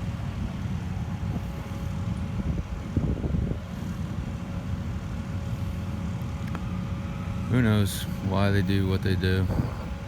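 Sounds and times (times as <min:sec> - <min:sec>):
faint steady whine: 0:00.0 - 0:10.0
low engine rumble: 0:00.0 - 0:10.0
wind buffeting microphone: 0:01.0 - 0:04.5, 0:09.2 - 0:10.0.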